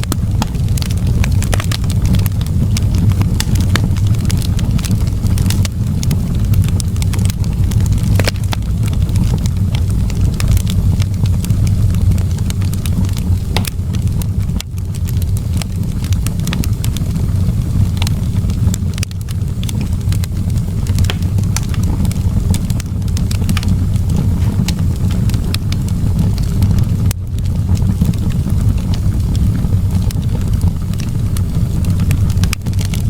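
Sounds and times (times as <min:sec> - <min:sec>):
wood fire crackling: 0:00.0 - 0:33.0.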